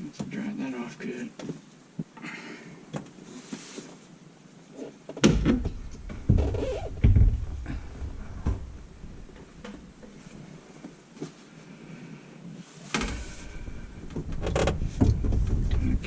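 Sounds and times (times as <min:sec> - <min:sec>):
short rustle: 0:03.2 - 0:04.2.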